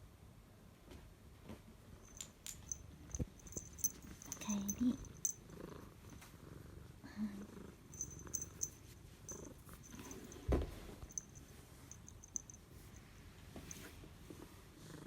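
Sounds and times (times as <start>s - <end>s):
cat purring: 2.0s - 15.0s.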